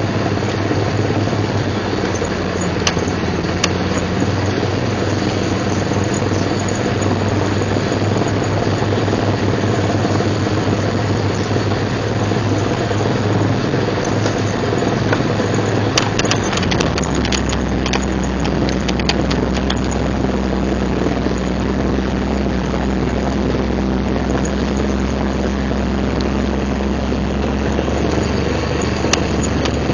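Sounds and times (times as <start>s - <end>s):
car engine driving: 0.0s - 29.9s
clicks and rattles: 2.1s - 8.6s, 12.3s - 20.2s, 28.0s - 29.9s.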